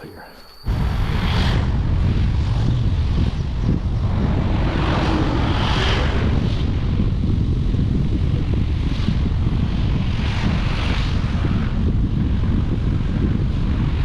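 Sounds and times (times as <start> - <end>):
rushing wind: 0.6 - 14.0
wind buffeting microphone: 0.6 - 14.0
vehicle rumble: 0.7 - 14.0.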